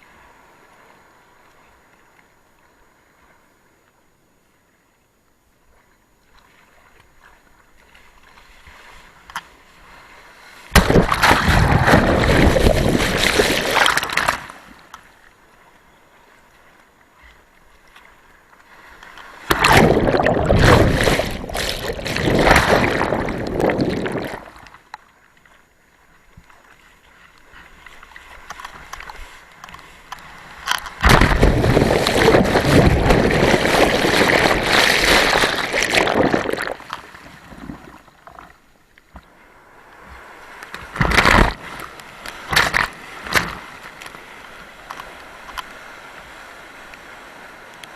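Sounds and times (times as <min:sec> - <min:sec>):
rough surf and rushing water: 0:08.4 - 0:14.9, 0:18.7 - 0:24.9, 0:27.4 - 0:38.2, 0:39.4 - 0:47.9.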